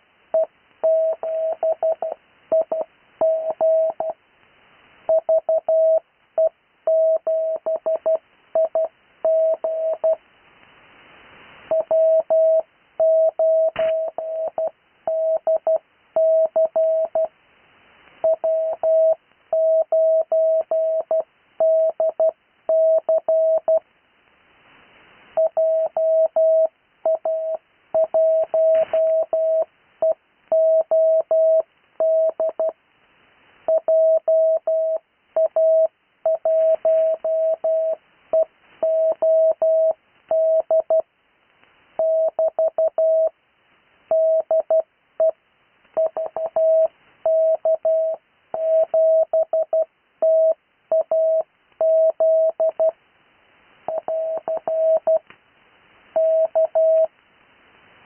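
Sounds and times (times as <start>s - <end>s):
morse code tone: 0.4s - 4.2s, 11.7s - 17.3s, 25.4s - 32.7s, 33.7s - 41.0s, 44.1s - 45.4s, 46.0s - 52.9s, 53.9s - 55.2s, 56.2s - 57.1s
faint hiss: 2.1s - 21.7s, 23.4s - 33.8s, 34.8s - 40.3s, 41.0s - 42.0s, 43.1s - 44.1s, 46.7s - 47.3s, 52.9s - 58.0s.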